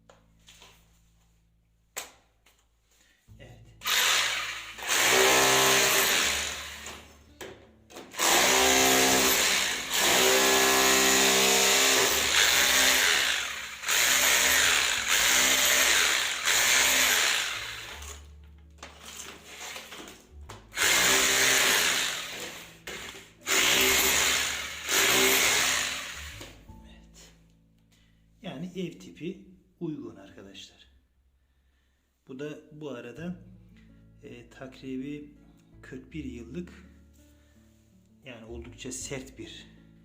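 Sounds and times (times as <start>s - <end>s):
rotary hammer drilling concrete: 3.8s - 7.0s, 8.1s - 18.2s, 20.7s - 26.6s.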